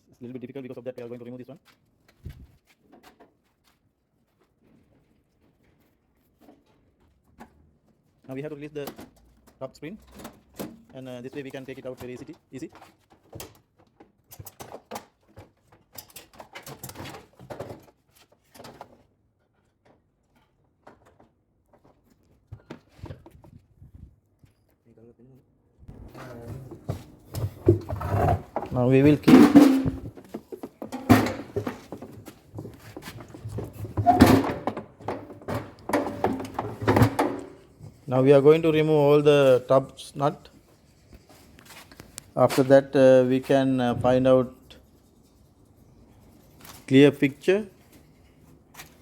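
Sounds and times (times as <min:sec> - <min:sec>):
washing machine drum knocks and scrapes: 0:26.7 - 0:38.0.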